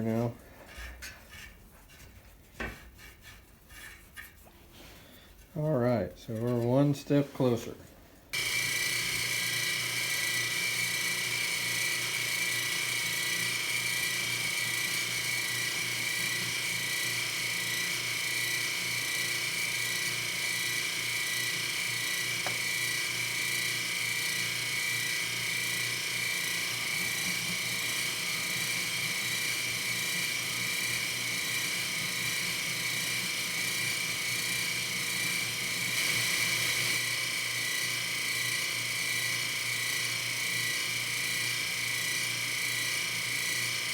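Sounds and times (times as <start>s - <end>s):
machine tool whining: 8.4s - 43.9s.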